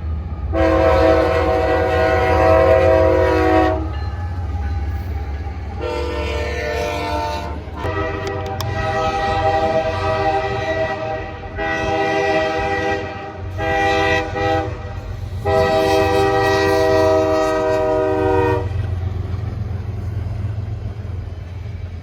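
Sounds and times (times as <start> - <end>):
train rumbling: 0.0 - 22.0
locomotive air horn blasts: 0.5 - 4.1, 5.7 - 19.0.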